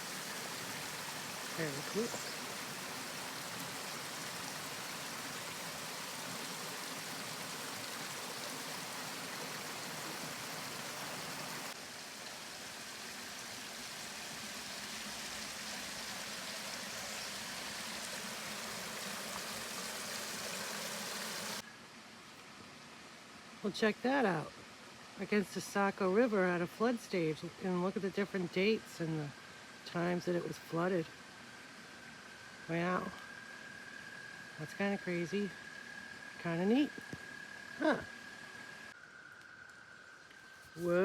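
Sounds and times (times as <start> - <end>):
stream water flowing: 0.0 - 21.6.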